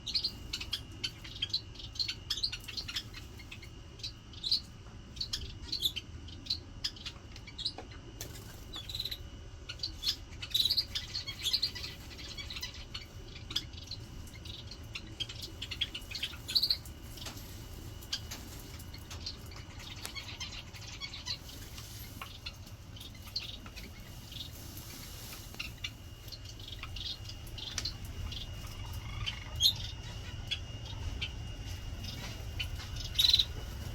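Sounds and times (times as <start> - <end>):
low steady hum: 0.0 - 33.9
small birds chirping: 0.0 - 33.9.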